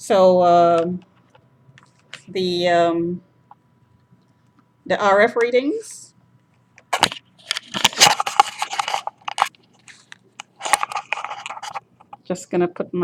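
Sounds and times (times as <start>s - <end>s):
crunchy crackling static: 0.0s - 12.6s.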